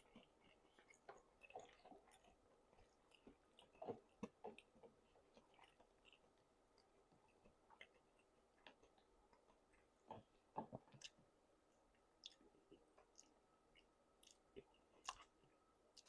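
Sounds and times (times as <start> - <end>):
person chewing food: 0.0 - 16.0.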